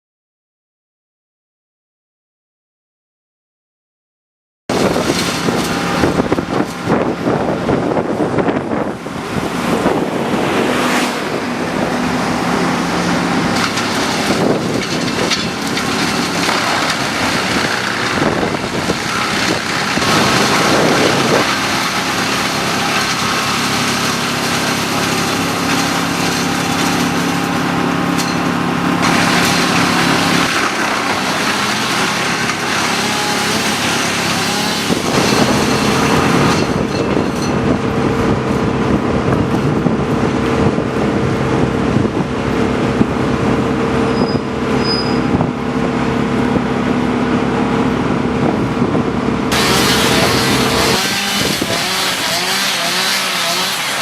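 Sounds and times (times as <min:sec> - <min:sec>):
wind buffeting microphone: 0:04.7 - 0:13.5, 0:17.2 - 0:21.6, 0:34.8 - 0:44.5, 0:48.0 - 0:50.4
engine running: 0:04.7 - 0:54.0.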